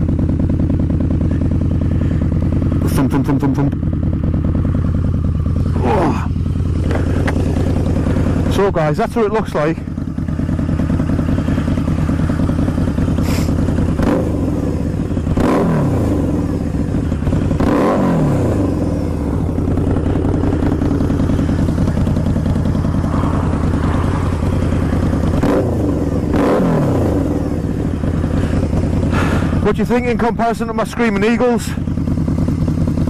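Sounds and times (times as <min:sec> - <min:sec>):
motorcycle engine idling and revving: 0:00.0 - 0:33.0.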